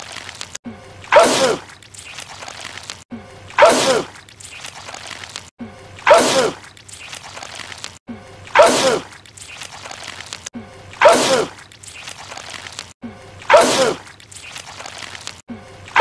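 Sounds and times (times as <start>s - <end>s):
wet dripping goo: 0.0s - 16.0s
cartoon character sneezing: 1.1s - 1.7s, 3.6s - 4.1s, 6.0s - 6.6s, 8.6s - 9.1s, 11.0s - 11.6s, 13.5s - 14.0s.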